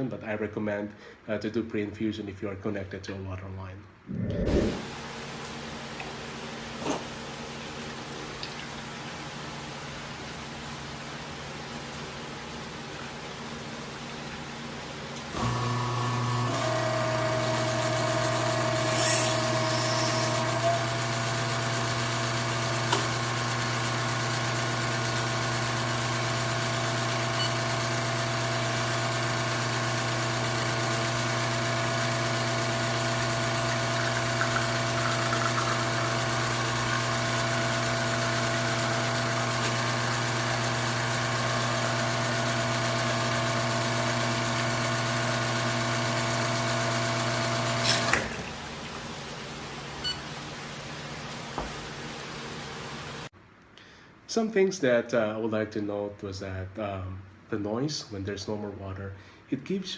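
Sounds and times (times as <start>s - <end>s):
espresso machine pump humming: 15.4s - 48.5s.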